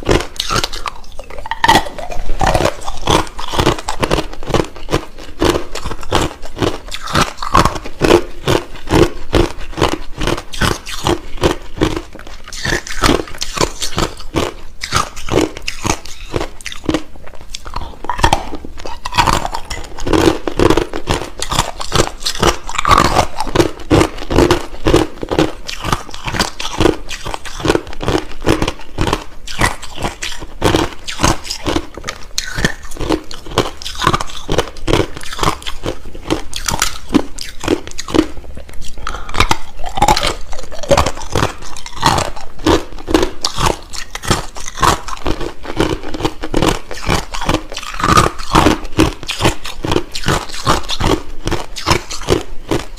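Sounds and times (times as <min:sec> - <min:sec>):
crunching ice in mouth: 0:00.0 - 0:52.9.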